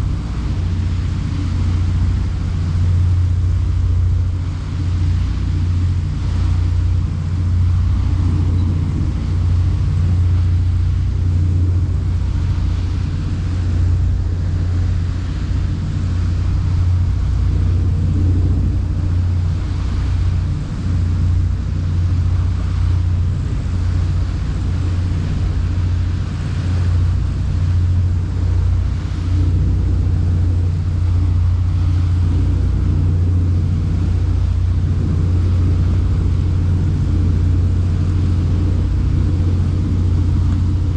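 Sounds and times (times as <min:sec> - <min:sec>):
boat engine drone: 0:00.0 - 0:40.9.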